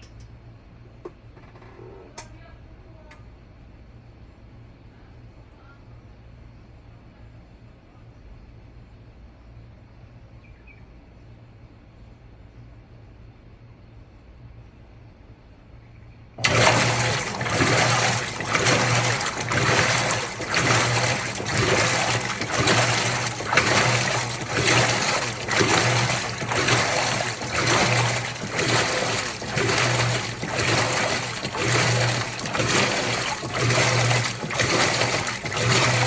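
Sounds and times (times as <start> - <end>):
low motor hum: 16.4 - 36.0
washing machine sloshing and churning: 16.4 - 36.0.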